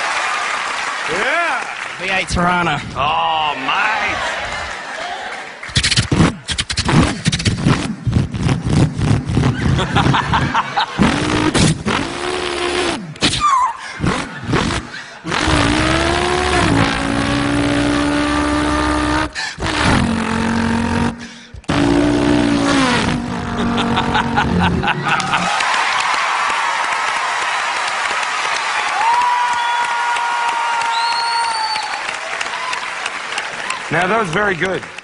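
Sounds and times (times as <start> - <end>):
man imitating racing car engine: 14.0 - 25.5.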